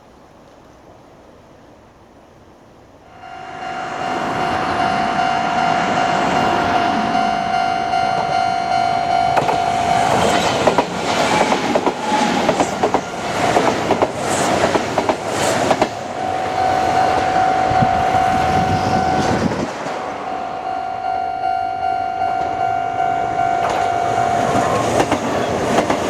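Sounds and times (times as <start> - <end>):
level-crossing alarm ringing: 3.1 - 14.1, 15.7 - 26.0
train wheels clicking over rail joints: 9.3 - 17.3, 23.6 - 26.0.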